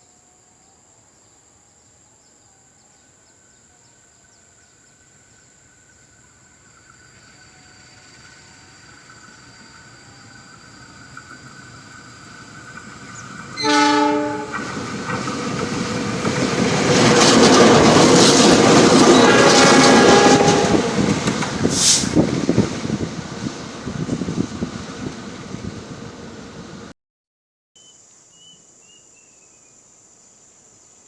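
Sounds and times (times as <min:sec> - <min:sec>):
diesel locomotive rumble: 0:07.8 - 0:26.9
train horn blast: 0:13.6 - 0:14.8, 0:19.0 - 0:22.1
wheels clattering on rails: 0:14.4 - 0:23.0.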